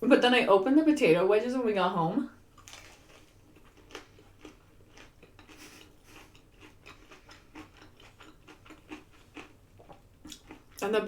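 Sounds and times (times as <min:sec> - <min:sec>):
person chewing food: 0:02.5 - 0:10.8.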